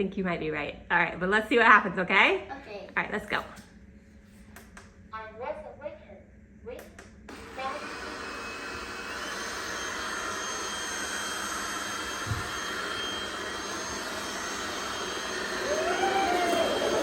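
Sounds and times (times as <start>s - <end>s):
robot vacuums whirring: 7.3s - 17.0s.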